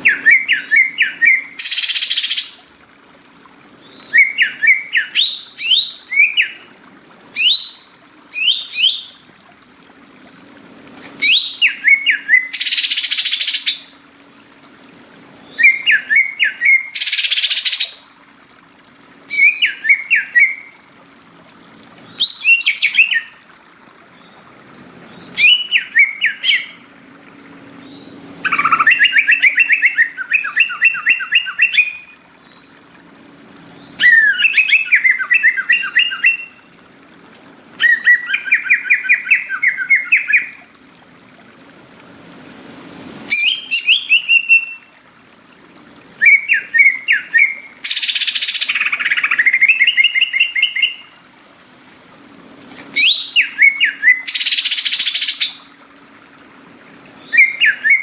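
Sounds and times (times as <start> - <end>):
bird warbling song: 0.0 - 2.7, 3.8 - 9.3, 11.1 - 14.0, 14.9 - 18.2, 19.3 - 20.8, 22.0 - 23.5, 24.1 - 26.9, 27.8 - 32.8, 33.7 - 36.7, 37.8 - 40.7, 43.3 - 45.0, 46.2 - 51.2, 52.9 - 55.7, 56.6 - 58.0.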